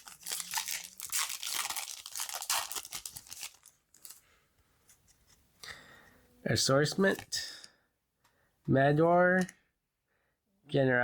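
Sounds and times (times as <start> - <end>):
foil wrapper tearing and crinkling: 0.0 - 4.2.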